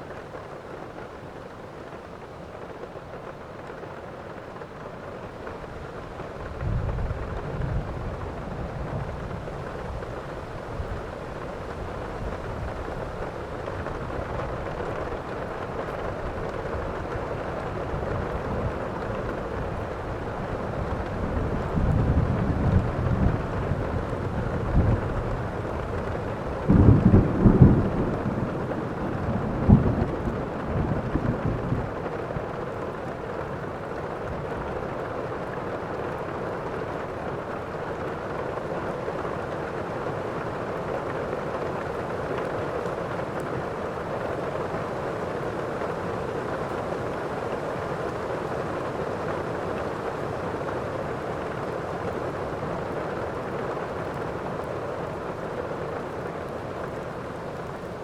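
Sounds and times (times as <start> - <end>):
heavy rain: 0.0 - 58.0
thunder rumbling: 11.6 - 33.0.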